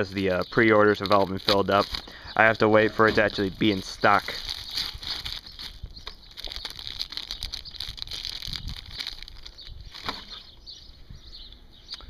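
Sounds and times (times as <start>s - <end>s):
birds chirping: 0.0s - 12.0s
knife and packaging being handled: 0.9s - 2.0s, 2.8s - 10.5s.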